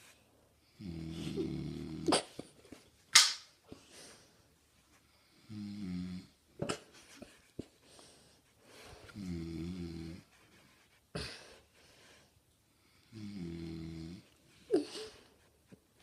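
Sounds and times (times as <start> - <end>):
man snoring: 0.8 - 2.1, 5.4 - 6.4, 9.2 - 10.2, 13.1 - 14.2.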